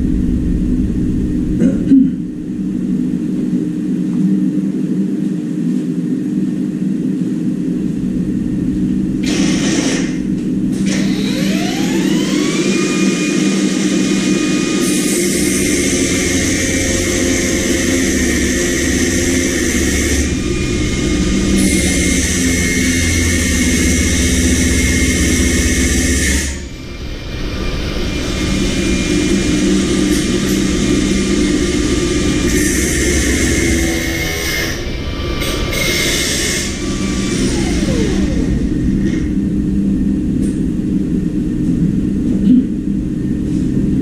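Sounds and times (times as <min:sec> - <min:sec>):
power tool motor whining: 0:09.2 - 0:26.7, 0:35.4 - 0:39.3.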